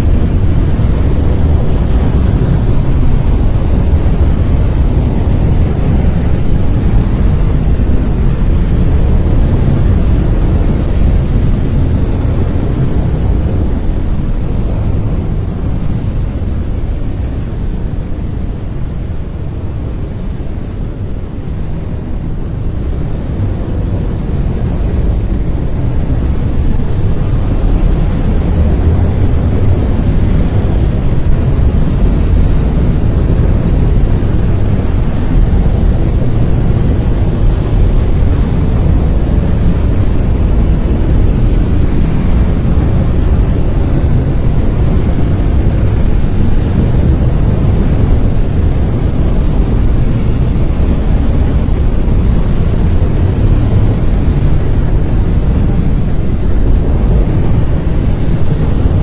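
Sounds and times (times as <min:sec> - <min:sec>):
deep rumbling brown noise: 0:00.0 - 0:59.0.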